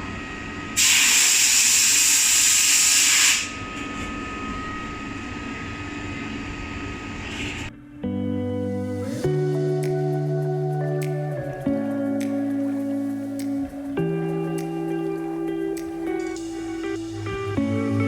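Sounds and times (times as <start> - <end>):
loud hiss of air or spray: 0.8 - 3.6
music: 7.7 - 18.0.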